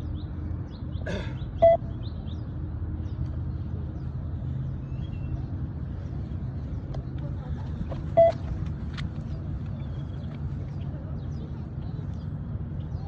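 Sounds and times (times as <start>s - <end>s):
short electronic beep: 1.6s - 1.8s, 8.2s - 8.4s.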